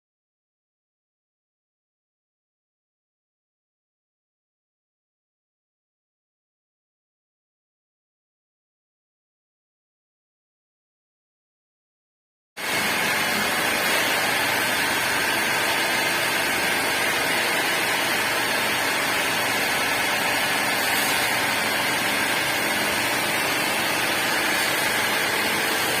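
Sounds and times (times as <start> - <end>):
cutting machine loud hiss: 12.6 - 26.0.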